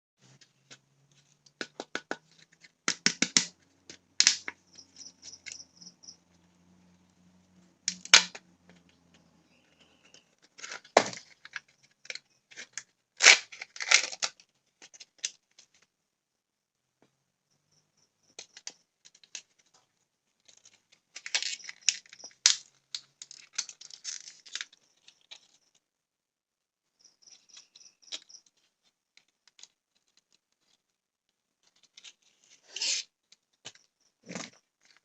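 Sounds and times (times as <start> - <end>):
wrappers crinkling and snapping: 10.4 - 15.9, 20.4 - 25.6.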